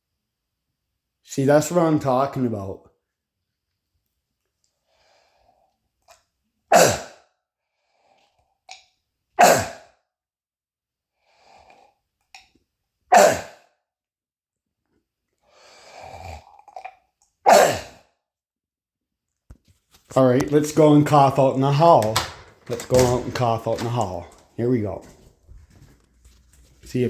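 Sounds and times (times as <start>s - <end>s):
breaths: 4.8s - 5.8s, 7.1s - 8.6s, 11.2s - 12.0s, 15.4s - 16.5s
man coughing: 17.5s - 17.9s.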